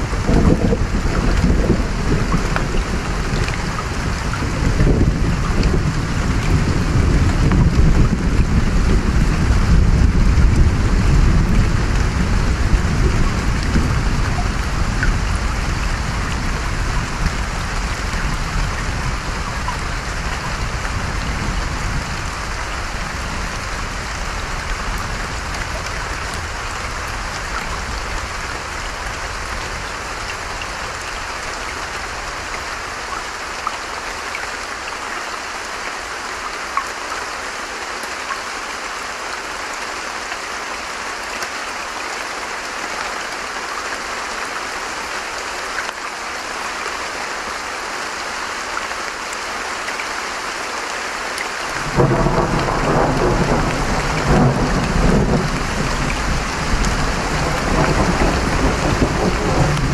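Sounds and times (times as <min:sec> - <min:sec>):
low rumble of thunder: 0:00.0 - 0:29.6, 0:51.8 - 0:59.9
running stream water: 0:00.0 - 0:59.9
steady rain: 0:00.0 - 0:59.9.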